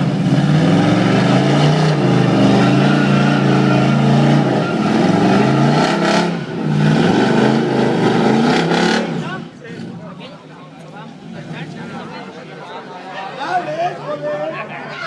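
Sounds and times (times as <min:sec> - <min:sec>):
car engine at high revs: 0:00.0 - 0:09.9.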